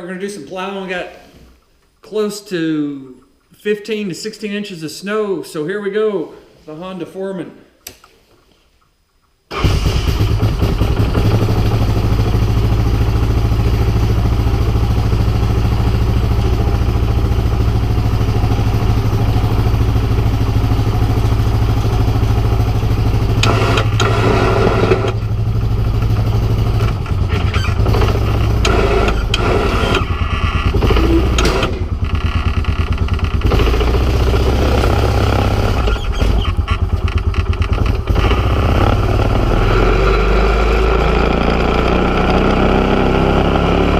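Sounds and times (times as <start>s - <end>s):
engine clatter: 9.5s - 43.9s
atv engine running hard: 10.0s - 43.9s
plow blade pushing snow: 13.7s - 32.0s, 33.4s - 36.6s, 37.8s - 43.9s.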